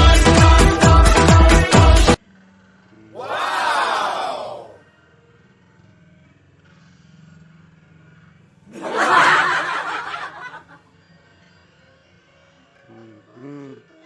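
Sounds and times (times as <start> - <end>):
burst of laughter: 8.7 - 10.8.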